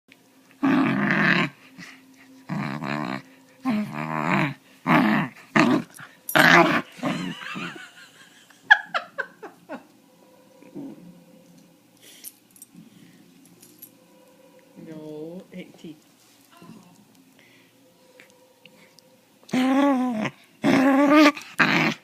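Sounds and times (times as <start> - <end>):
puppy growling grumbles: 0.6 - 7.8, 10.6 - 11.3, 19.5 - 22.0.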